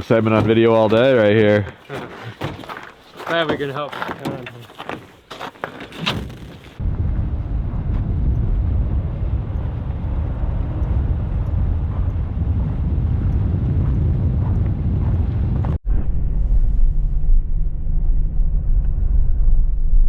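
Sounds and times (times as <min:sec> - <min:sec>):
vehicle engine rumble: 0:06.6 - 0:20.0.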